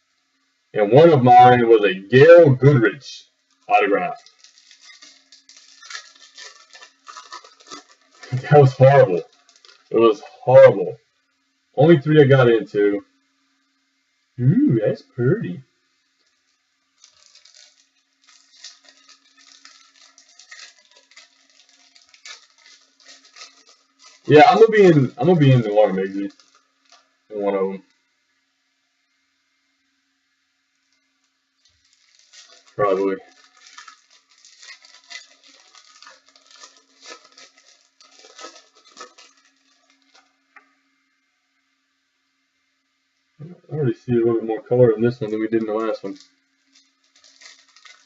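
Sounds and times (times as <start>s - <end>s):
faint steady hum: 0.0s - 48.0s
cards and wrappers crinkling: 3.4s - 10.3s, 16.2s - 27.9s, 30.9s - 40.4s, 44.9s - 48.0s.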